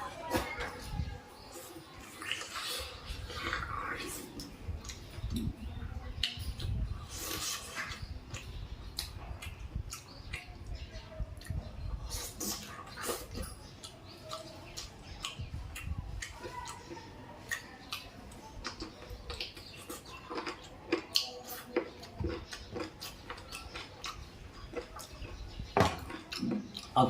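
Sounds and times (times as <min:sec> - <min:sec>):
wet chewing clicks and smacks: 0:01.9 - 0:27.0.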